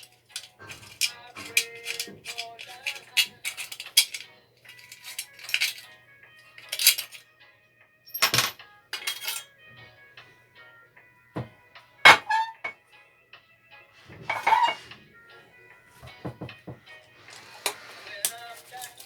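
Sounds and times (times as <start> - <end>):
metal tools clinking: 0.0 - 7.2, 8.1 - 9.5, 12.1 - 12.8, 14.0 - 15.0, 16.0 - 19.0
background music: 0.0 - 19.0.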